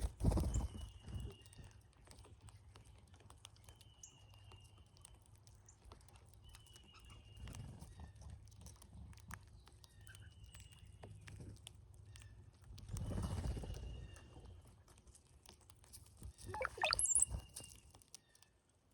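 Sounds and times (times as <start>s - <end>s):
birds pecking on feeder: 0.0s - 18.5s
thin short bird whistles: 16.5s - 17.4s.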